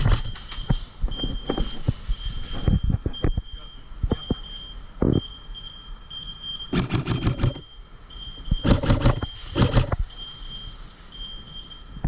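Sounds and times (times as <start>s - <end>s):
high beeping tone: 0.0s - 12.0s
airsoft gun bursts of clicks: 6.7s - 7.6s, 8.6s - 10.0s.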